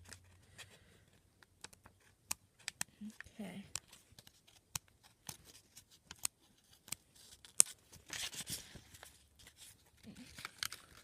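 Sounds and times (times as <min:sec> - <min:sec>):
paper rustling: 0:03.9 - 0:11.0.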